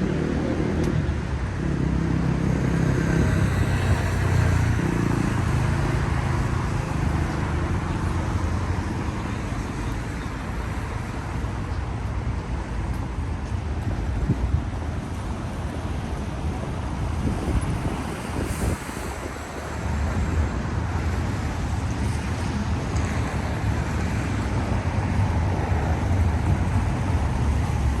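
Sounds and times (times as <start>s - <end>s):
traffic hiss on wet road: 15.2s - 28.0s.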